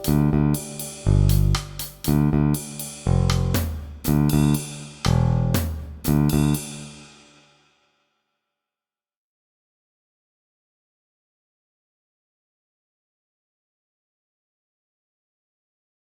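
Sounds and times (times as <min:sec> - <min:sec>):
plucked guitar notes: 0:00.0 - 0:02.6
deep bass: 0:00.0 - 0:06.6.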